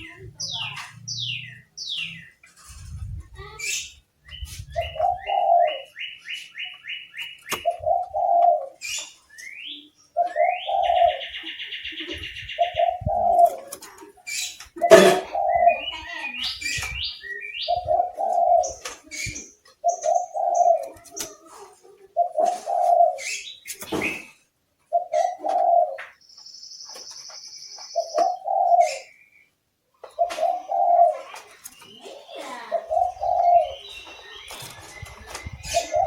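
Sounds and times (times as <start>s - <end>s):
songbird chirping and whistling: 0.0s - 2.4s, 3.0s - 13.5s, 14.3s - 21.0s, 22.3s - 36.0s
low dove-like coo: 4.5s - 5.9s, 7.6s - 8.8s, 10.2s - 11.4s, 12.0s - 14.0s, 14.8s - 16.1s, 17.6s - 23.4s, 24.9s - 26.1s, 28.0s - 29.2s, 30.2s - 31.5s, 32.1s - 36.0s.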